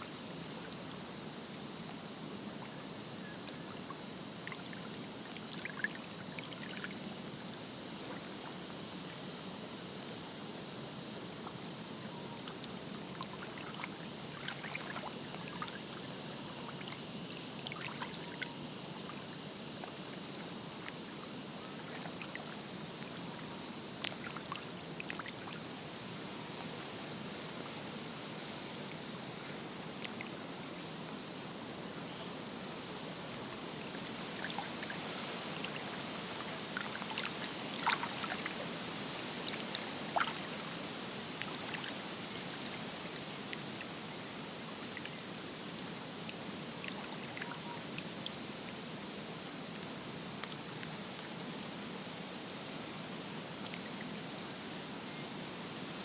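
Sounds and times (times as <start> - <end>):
lake water lapping at shore: 33.9 - 38.6, 39.3 - 40.8.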